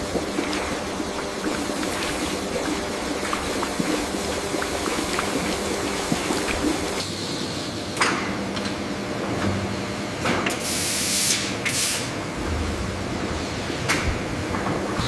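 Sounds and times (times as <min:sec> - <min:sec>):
steady machine hum: 0:00.0 - 0:07.0.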